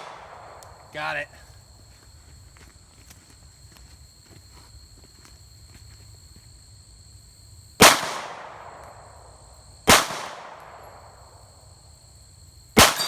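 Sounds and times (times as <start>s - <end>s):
pistol shots echoing: 7.8s - 8.8s, 9.9s - 10.8s, 12.8s - 13.0s.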